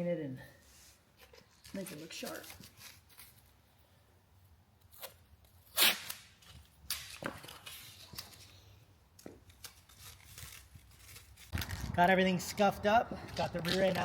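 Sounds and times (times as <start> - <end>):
masking tape clicks and rips: 4.8 - 8.3.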